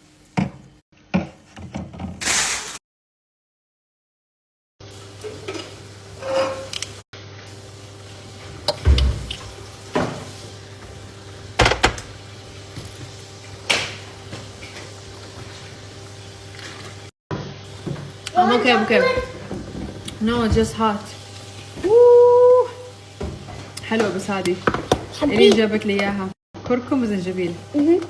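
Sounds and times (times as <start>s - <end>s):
objects knocking and clattering: 19.0s - 21.0s, 23.2s - 25.7s.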